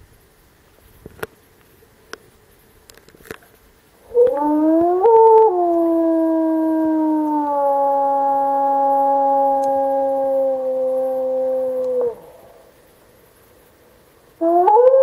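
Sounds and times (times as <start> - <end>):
faint clicks: 0.8 - 6.0, 8.8 - 10.3, 11.7 - 12.6
wolf howling: 4.0 - 12.8, 14.4 - 15.0.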